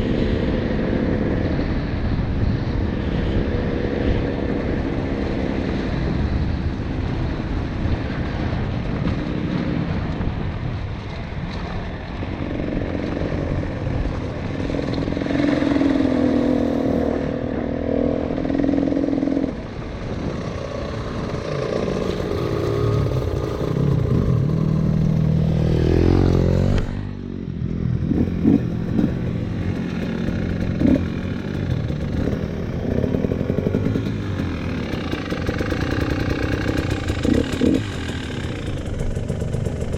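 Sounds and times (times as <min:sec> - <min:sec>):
dirt bike engine revving: 0:12.8 - 0:19.7, 0:21.1 - 0:27.2, 0:28.0 - 0:39.9
engine knocks and rattles: 0:28.0 - 0:39.9.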